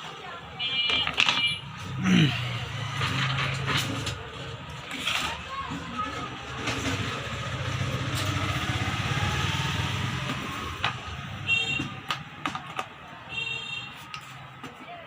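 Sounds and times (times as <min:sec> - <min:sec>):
sharp clicks and knocks: 0:11.7 - 0:13.0.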